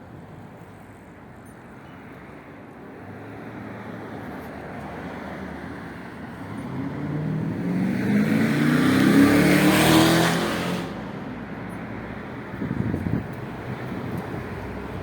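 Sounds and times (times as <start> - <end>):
car engine passing by: 6.4 - 11.0.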